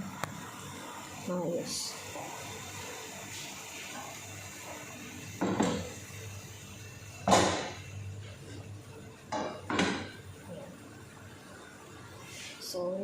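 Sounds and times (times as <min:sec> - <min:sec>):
pots and utensils clattering: 0:05.4 - 0:06.0, 0:07.2 - 0:08.7, 0:09.3 - 0:10.2.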